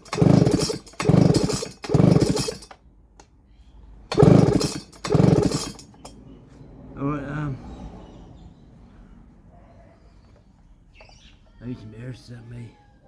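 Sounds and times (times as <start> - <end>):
chainsaw starter cord pulls: 0.0 - 2.8, 4.1 - 6.1
engine cranking: 0.0 - 2.9, 4.1 - 6.2.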